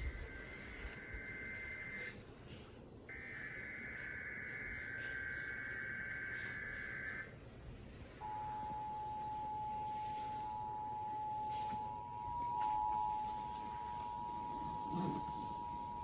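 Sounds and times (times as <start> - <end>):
two-tone alert signal: 0.0 - 2.1.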